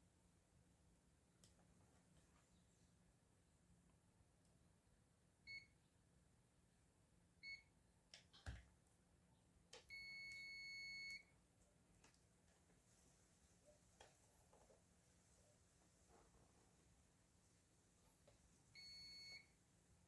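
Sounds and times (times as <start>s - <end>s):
multimeter beeping: 9.9s - 11.3s, 18.8s - 19.5s.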